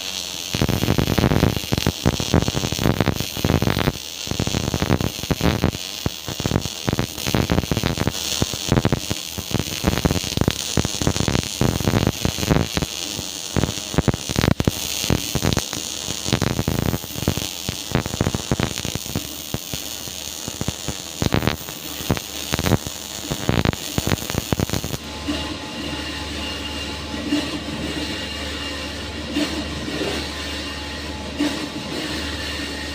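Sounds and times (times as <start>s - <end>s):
welding arc crackling: 0.0s - 32.9s.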